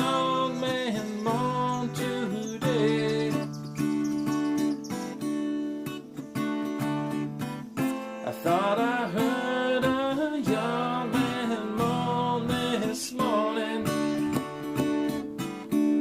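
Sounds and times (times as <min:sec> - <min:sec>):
person singing: 0:00.0 - 0:04.3, 0:08.2 - 0:14.6
acoustic guitar strumming: 0:00.0 - 0:16.0.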